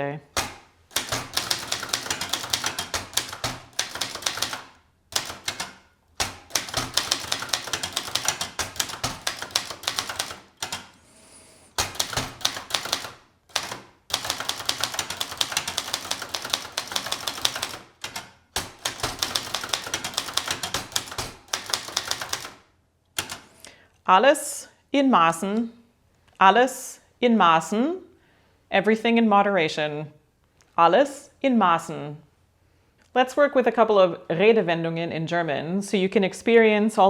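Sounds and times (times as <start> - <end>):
typewriter keys clacking: 0.3 - 11.0, 11.8 - 22.6, 23.2 - 23.6.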